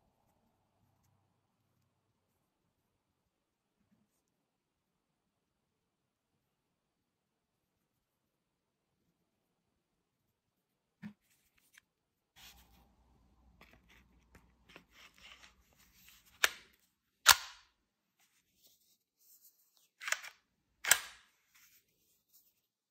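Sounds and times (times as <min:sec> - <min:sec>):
air pistol handling clicks: 0:17.3 - 0:17.7, 0:20.0 - 0:21.2.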